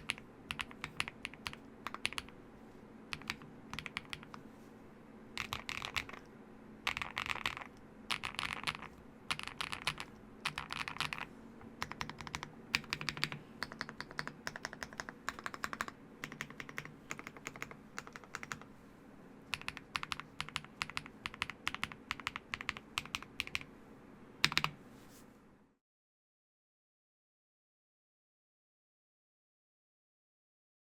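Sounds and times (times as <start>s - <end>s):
mechanical keyboard typing: 0.0s - 2.4s, 3.1s - 4.4s, 5.4s - 18.7s, 19.5s - 23.7s, 24.4s - 24.8s.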